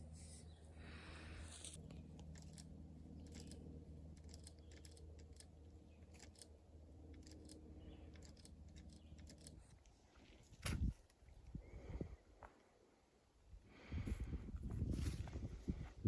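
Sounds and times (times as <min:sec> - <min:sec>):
low steady hum: 0:00.0 - 0:16.0
faint ticks and clicks: 0:01.8 - 0:10.0.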